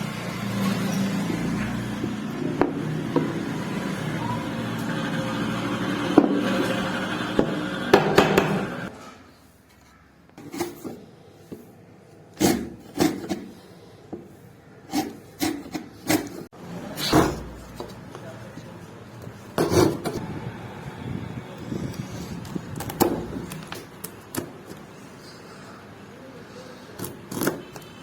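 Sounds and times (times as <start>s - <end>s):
sharp knocks on wood: 8.0s - 8.6s.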